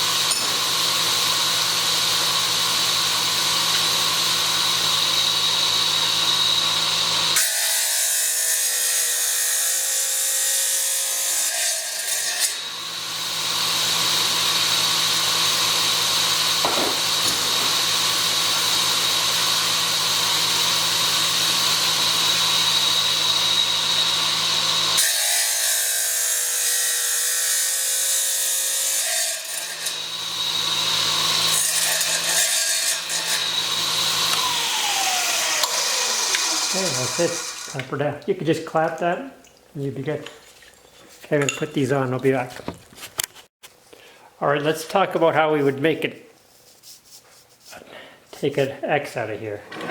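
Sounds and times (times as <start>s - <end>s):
saw motor winding down: 0.0s - 7.5s, 12.4s - 25.2s, 29.3s - 37.8s
wet tile saw cutting tile: 0.0s - 37.9s.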